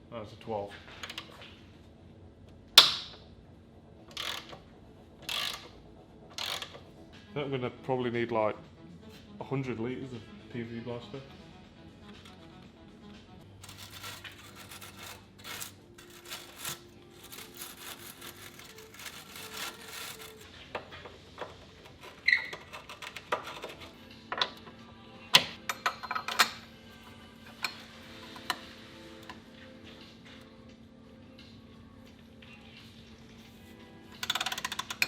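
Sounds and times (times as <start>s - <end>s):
faint background music: 0.0s - 35.0s
hand tool rapid clicking: 13.6s - 20.4s.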